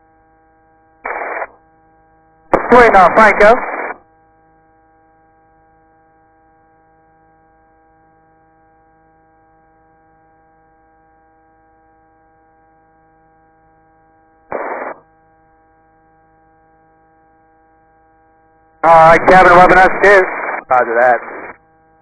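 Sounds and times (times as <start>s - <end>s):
electrical hum: 0.6s - 4.0s, 14.2s - 22.0s
burst of radio static: 1.1s - 1.5s, 2.6s - 4.0s, 14.5s - 15.0s, 18.8s - 21.6s
steady tones: 18.8s - 21.5s.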